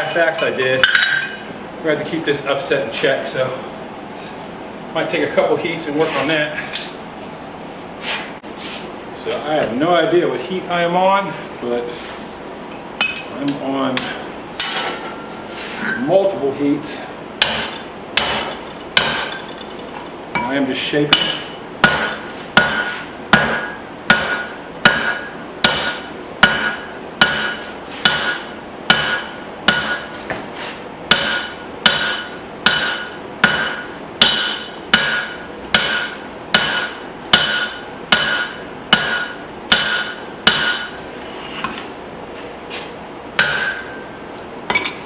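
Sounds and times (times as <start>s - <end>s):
hammer striking steel on anvil: 0.0s - 1.4s, 17.4s - 19.4s, 20.4s - 30.1s, 31.1s - 41.0s, 43.4s - 44.0s.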